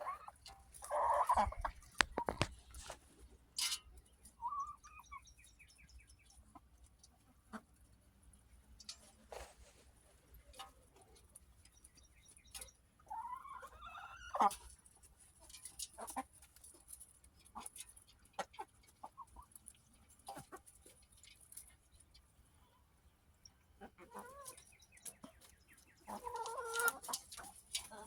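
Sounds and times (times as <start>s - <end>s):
beaks pecking food: 0.0s - 7.7s, 24.1s - 28.0s
hens clucking: 0.0s - 21.8s, 23.4s - 28.0s.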